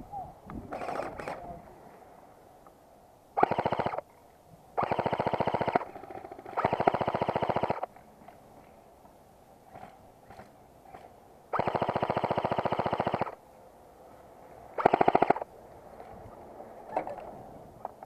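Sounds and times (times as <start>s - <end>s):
airsoft gun firing full auto: 3.4s - 4.0s, 4.8s - 7.9s, 11.5s - 13.4s, 14.8s - 15.5s.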